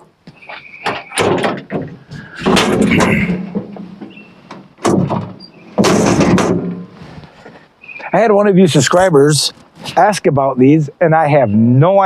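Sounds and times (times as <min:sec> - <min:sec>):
metal clanking and scraping: 0:00.0 - 0:07.6.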